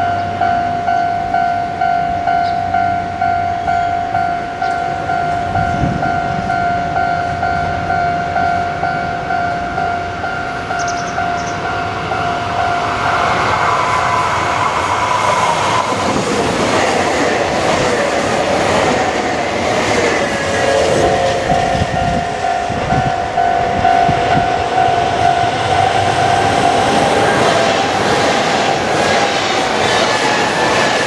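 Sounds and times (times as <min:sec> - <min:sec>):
crossing warning bells: 0:00.0 - 0:31.0
train wheels clattering: 0:10.6 - 0:31.0.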